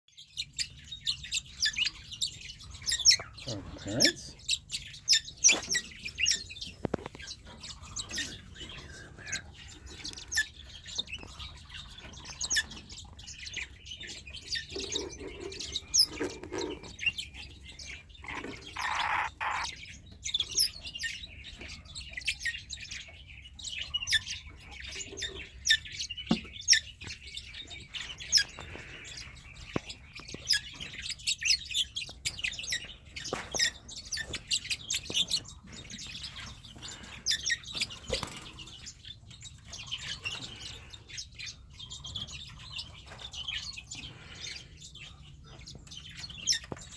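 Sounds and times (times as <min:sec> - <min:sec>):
parrots chirping: 0:07.3 - 0:19.8
loud long parrot call: 0:18.2 - 0:19.7.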